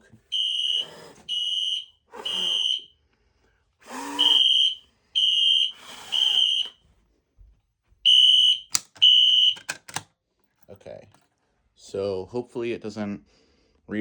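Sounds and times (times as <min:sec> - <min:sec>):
fire alarm beeping: 0:00.3 - 0:02.9, 0:04.0 - 0:06.8, 0:08.0 - 0:09.7
person blowing puffs: 0:00.3 - 0:02.9, 0:03.8 - 0:06.8
sharp clicks: 0:08.1 - 0:10.1.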